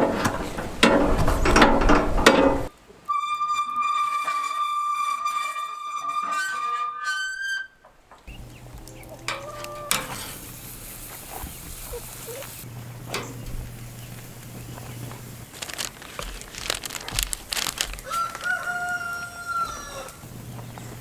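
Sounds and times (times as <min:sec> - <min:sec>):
rooster crowing: 0:17.5 - 0:20.3.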